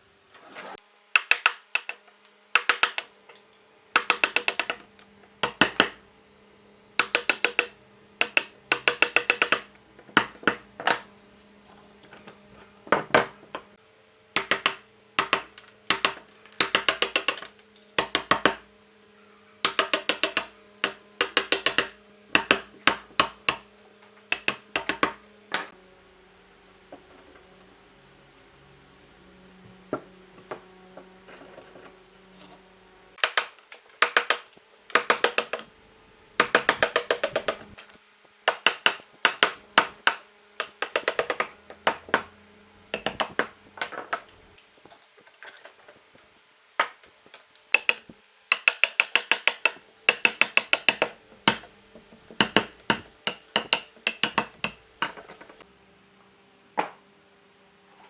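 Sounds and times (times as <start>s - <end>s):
hammer tapping on wood: 1.2s - 2.0s, 2.6s - 3.1s, 4.0s - 6.0s, 7.0s - 11.1s, 14.4s - 18.6s, 19.6s - 23.7s, 24.3s - 25.7s, 33.2s - 35.7s, 36.4s - 37.7s, 38.5s - 42.3s, 42.9s - 44.2s, 47.7s - 55.6s.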